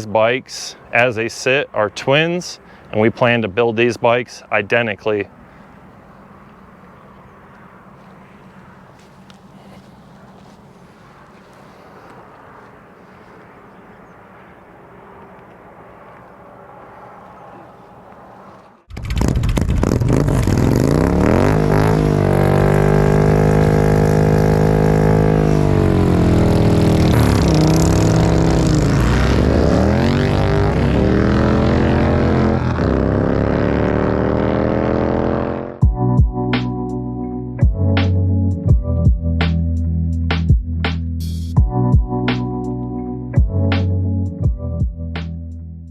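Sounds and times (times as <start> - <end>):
motorcycle engine accelerating: 17.0 - 36.0.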